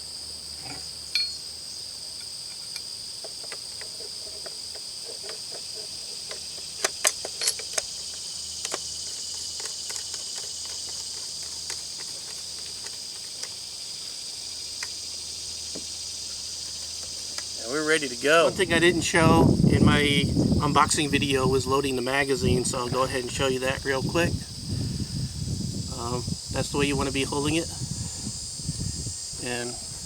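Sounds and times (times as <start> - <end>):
insects chirping: 0.0 - 30.0
rifle parts clicking: 6.3 - 13.6.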